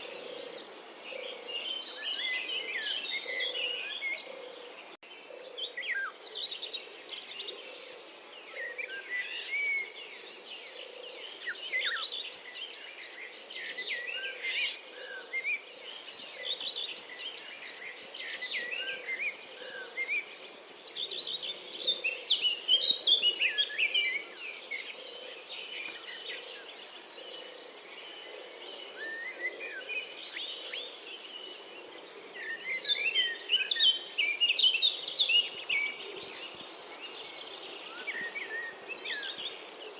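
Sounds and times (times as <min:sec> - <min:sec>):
robin singing: 0:00.0 - 0:31.5.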